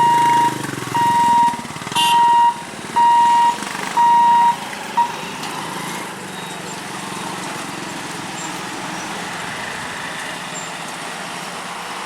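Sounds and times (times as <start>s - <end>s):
level crossing hooter beeping: 0.0s - 5.3s
engine running: 0.0s - 12.0s.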